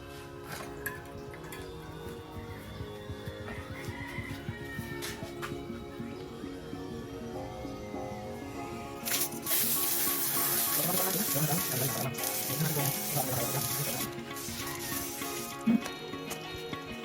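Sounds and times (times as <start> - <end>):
background music: 0.0 - 17.0
hissing spray bursts: 9.0 - 15.8.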